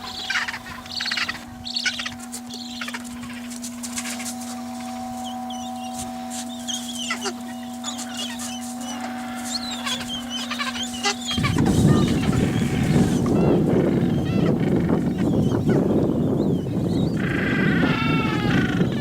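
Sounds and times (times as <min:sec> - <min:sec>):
penguins high squeaky calls: 0:00.0 - 0:04.4, 0:06.7 - 0:16.0, 0:17.2 - 0:19.0
penguins clucking: 0:00.0 - 0:19.0
steady low hum: 0:00.0 - 0:19.0.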